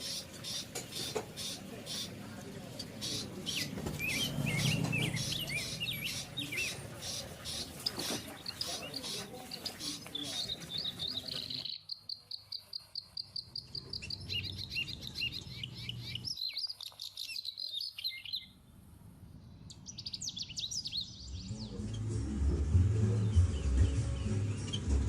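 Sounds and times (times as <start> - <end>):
finch chicks chirping: 0.0 - 18.6, 19.7 - 22.0.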